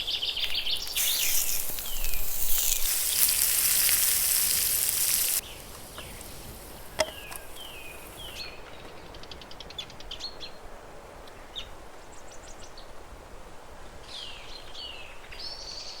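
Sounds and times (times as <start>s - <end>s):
frying sizzle: 0.0s - 8.5s
birds chirping: 0.0s - 9.4s
ticking bird notes: 0.4s - 8.4s.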